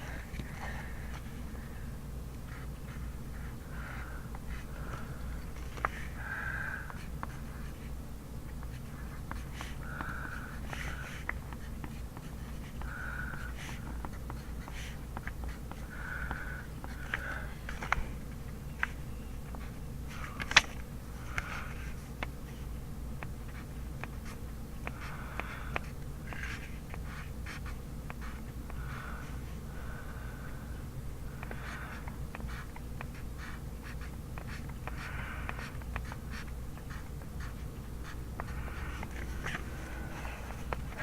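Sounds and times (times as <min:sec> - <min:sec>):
low room hum: 0:00.0 - 0:41.0
pen scratching on paper: 0:08.5 - 0:17.9, 0:18.8 - 0:29.6, 0:31.4 - 0:41.0
pen tapping on paper: 0:23.2 - 0:28.8, 0:31.4 - 0:39.6.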